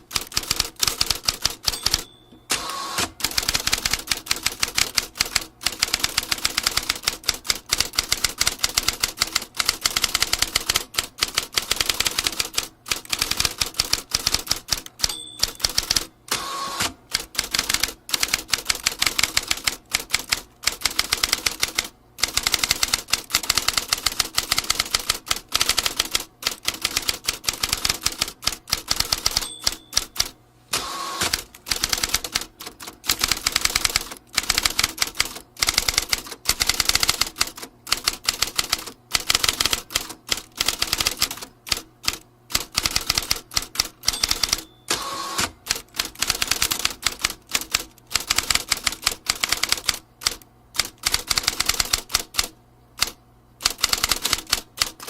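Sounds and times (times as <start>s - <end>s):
typewriter typing: 0.0s - 55.0s
typewriter bell ring: 0.2s - 6.7s, 14.2s - 19.7s, 27.8s - 30.4s, 42.9s - 45.5s.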